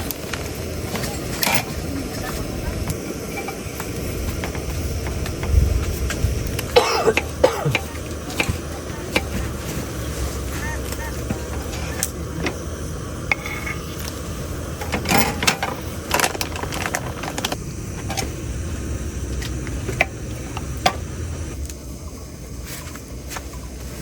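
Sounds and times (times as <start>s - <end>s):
low rumble: 0.0s - 24.0s
small hard objects clinking: 13.3s - 18.3s.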